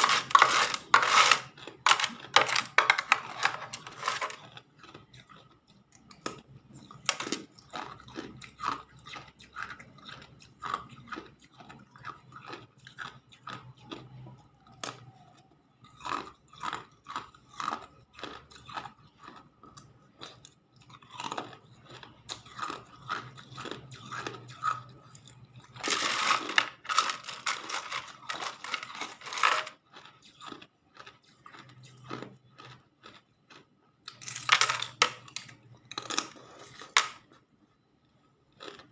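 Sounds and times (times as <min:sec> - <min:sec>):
ice being chewed: 0:00.0 - 0:38.9.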